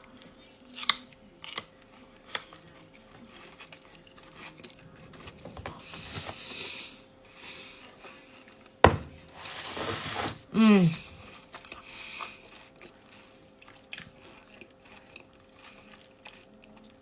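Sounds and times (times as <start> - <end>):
crunchy biting and chewing: 0.6 - 6.6, 11.4 - 17.0.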